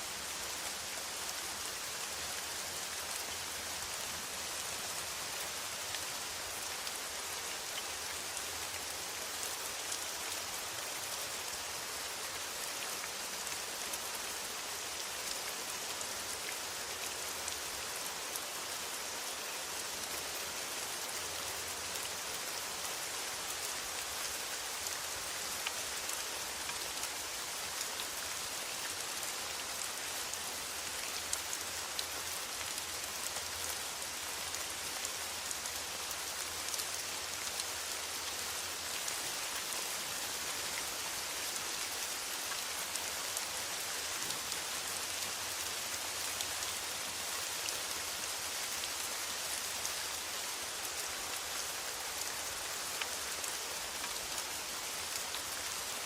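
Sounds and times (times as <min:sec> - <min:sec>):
rain on a metal roof: 0:00.0 - 0:56.0.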